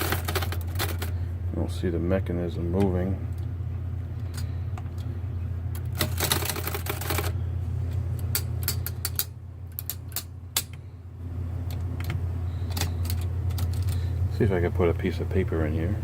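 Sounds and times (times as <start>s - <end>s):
manual typewriter clacking: 0.0s - 1.1s, 5.8s - 7.4s.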